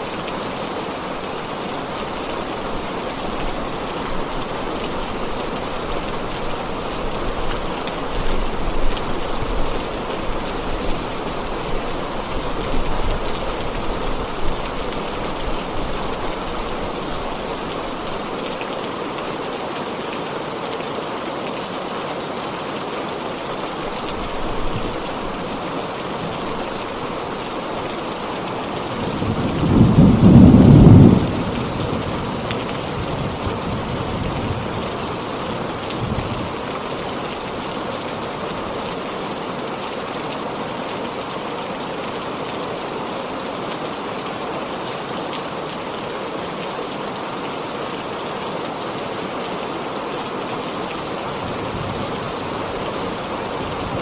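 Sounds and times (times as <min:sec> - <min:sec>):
heavy rain falling: 0:00.0 - 0:54.0
thunder clap and rumbles: 0:29.0 - 0:32.4.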